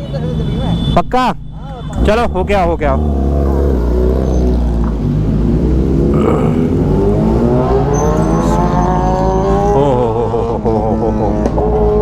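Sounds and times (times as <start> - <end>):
motorcycle engine accelerating: 1.9 - 10.0.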